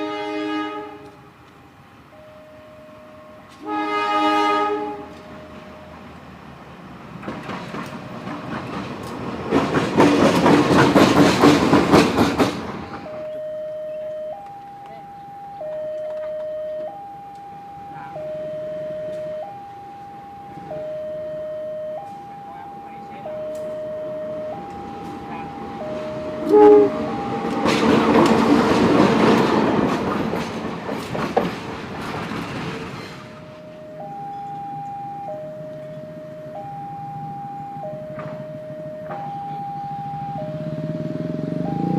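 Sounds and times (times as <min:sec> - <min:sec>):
train wheels clacking over rails: 0:07.1 - 0:13.2, 0:24.6 - 0:33.5.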